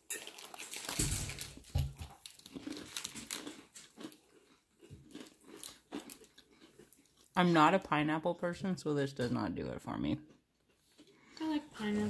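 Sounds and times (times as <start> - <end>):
biscuit crunching while chewed: 0.0 - 7.4, 10.2 - 11.4.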